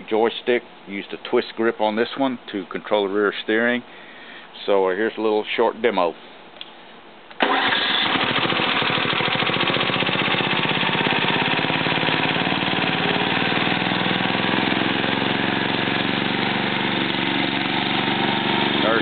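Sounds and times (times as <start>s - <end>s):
small gasoline engine running: 7.4s - 19.0s.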